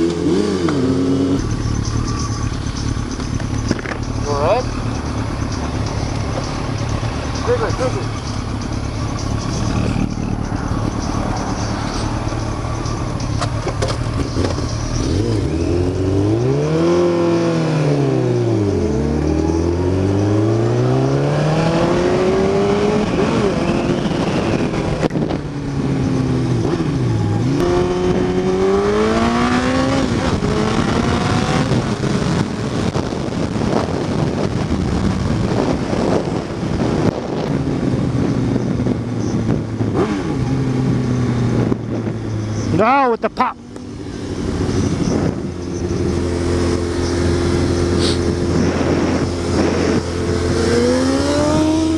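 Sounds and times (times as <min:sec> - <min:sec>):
motorcycle engine accelerating: 0:00.0 - 0:51.9
wind rush: 0:21.0 - 0:40.4, 0:44.0 - 0:51.9.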